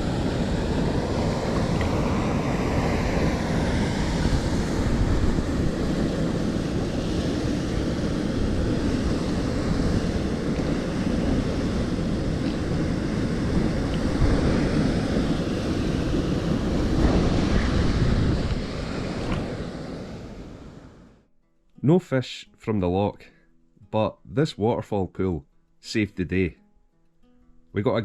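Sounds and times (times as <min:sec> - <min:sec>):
wind buffeting microphone: 0:00.0 - 0:21.1.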